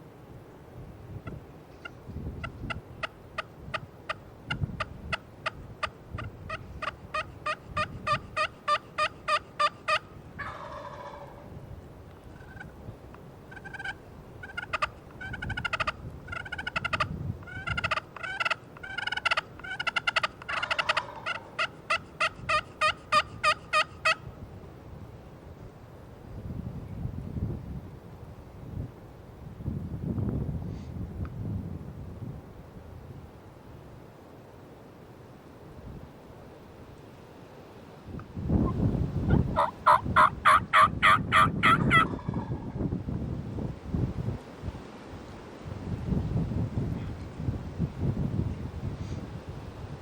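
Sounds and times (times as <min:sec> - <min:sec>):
turkey calling: 0:01.2 - 0:11.4, 0:12.4 - 0:12.7, 0:13.5 - 0:24.2, 0:38.6 - 0:42.7
turkey rattling call: 0:01.8 - 0:11.4, 0:12.4 - 0:12.7, 0:13.5 - 0:24.2, 0:38.6 - 0:42.7.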